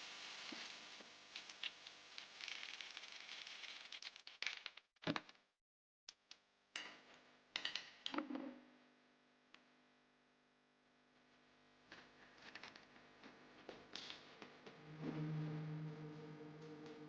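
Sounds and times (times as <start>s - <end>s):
faint hiss: 0.0s - 3.7s.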